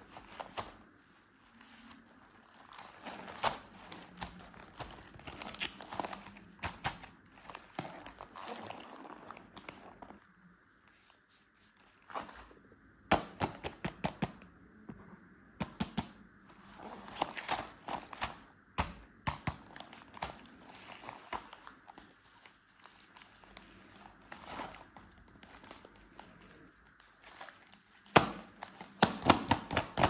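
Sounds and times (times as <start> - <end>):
packaging crinkling: 0.0 - 10.2, 19.6 - 30.0.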